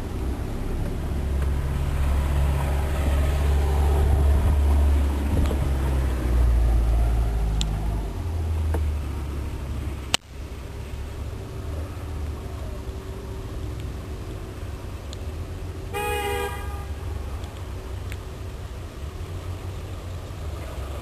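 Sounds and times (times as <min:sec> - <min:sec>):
car engine rumble: 0:00.0 - 0:21.0.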